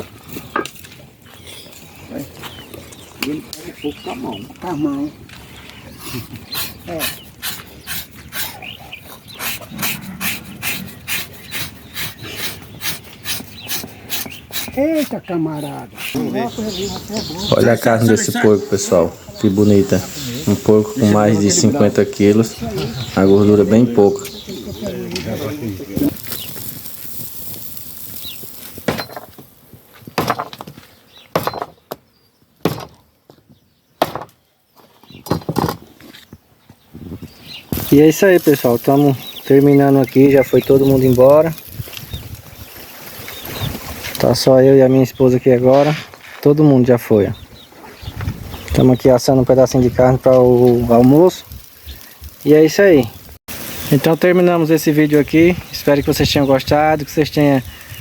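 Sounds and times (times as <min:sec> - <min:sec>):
chopping blows on wood: 0:30.0 - 0:32.0, 0:32.6 - 0:33.0, 0:34.0 - 0:34.4.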